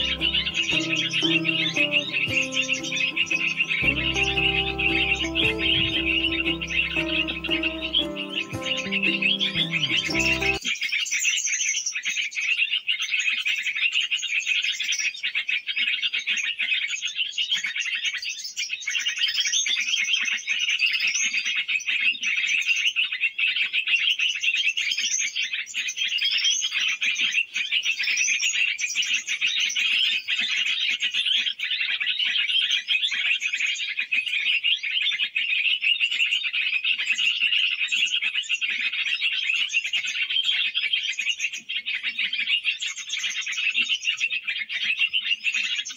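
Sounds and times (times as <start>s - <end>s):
small birds chirping: 0.0s - 10.6s.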